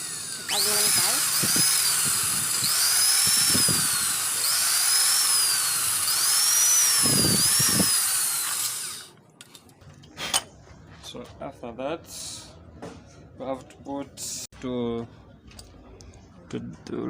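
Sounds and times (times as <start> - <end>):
electric drill whining: 0.0 - 9.1.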